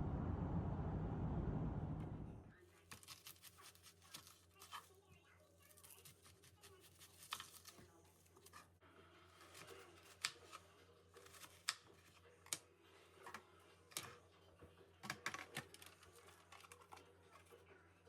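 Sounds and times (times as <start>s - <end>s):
faint steady hum: 0.0s - 2.5s.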